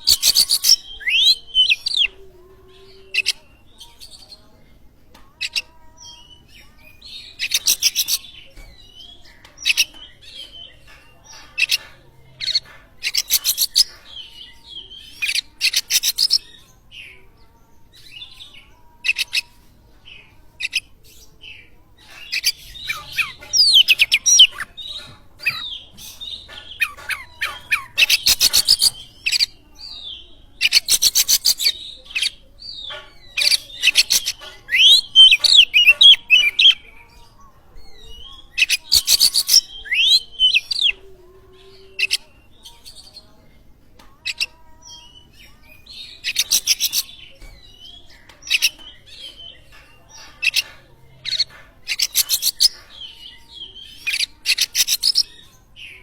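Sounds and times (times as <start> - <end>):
bird singing rattles and whistles: 0.0 - 2.1, 22.2 - 29.5, 30.6 - 36.8.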